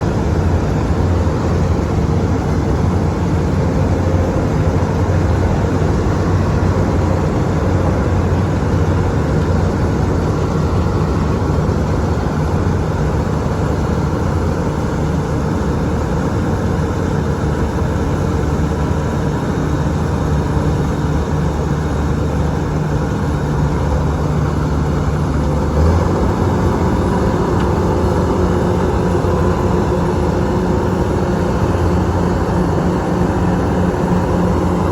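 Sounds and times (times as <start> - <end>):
machine engine droning: 0.0 - 34.9.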